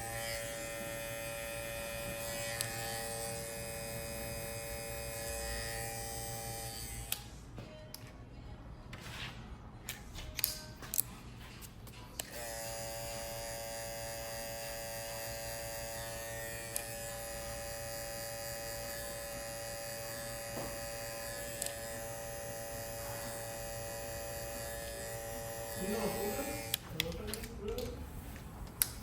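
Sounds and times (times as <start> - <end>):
electric hair clipper buzzing: 0.0 - 7.4, 12.2 - 26.9.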